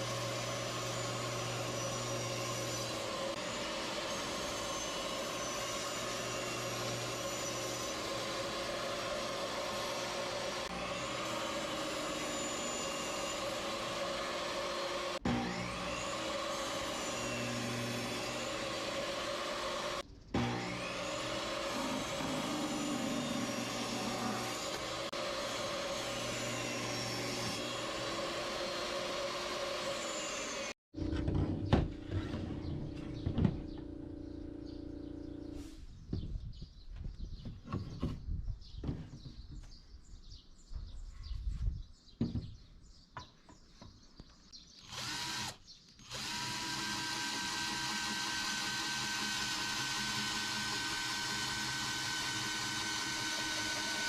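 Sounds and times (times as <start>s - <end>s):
power tool running on wood: 0.0s - 30.8s, 44.8s - 54.0s.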